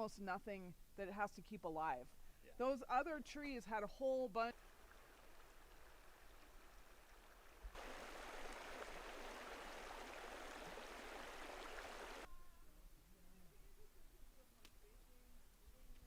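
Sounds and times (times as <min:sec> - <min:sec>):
steady rushing hiss: 0:07.7 - 0:12.3.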